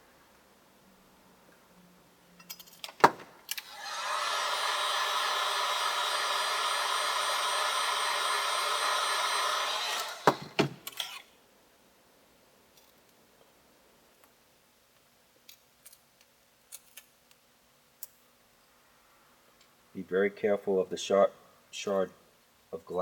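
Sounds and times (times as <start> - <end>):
heat gun fan whine: 3.1 - 11.2.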